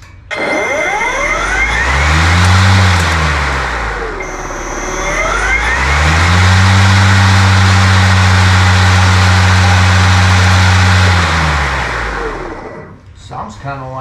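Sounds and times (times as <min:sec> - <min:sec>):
electric lawn mower motor whine: 0:00.3 - 0:13.0.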